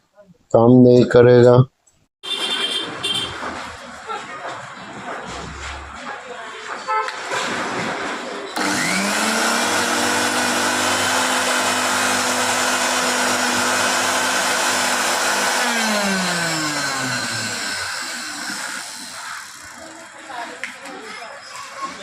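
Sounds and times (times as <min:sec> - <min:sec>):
mixer grinder motor whining: 0:08.6 - 0:20.1.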